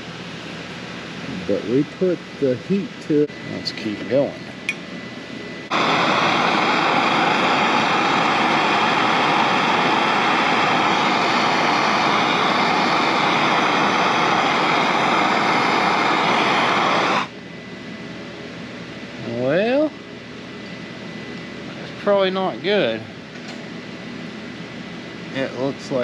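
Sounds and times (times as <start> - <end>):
propane torch flame rushing: 5.6 - 17.4.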